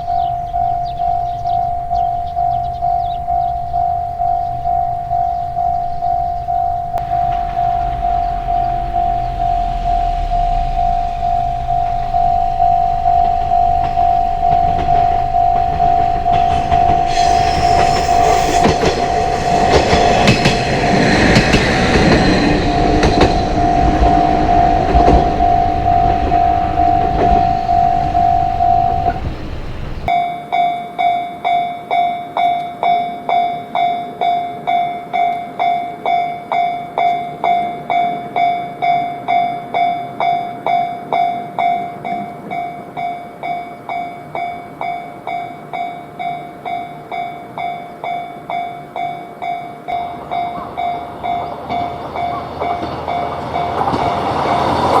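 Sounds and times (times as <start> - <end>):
train wheels clattering over rails: 0.0 - 30.1, 50.0 - 55.0
level crossing warning bell: 0.0 - 55.0.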